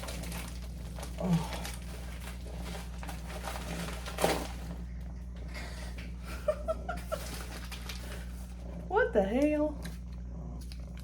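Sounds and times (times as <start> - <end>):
packaging rustling and crinkling: 0.0 - 4.9, 6.8 - 8.6.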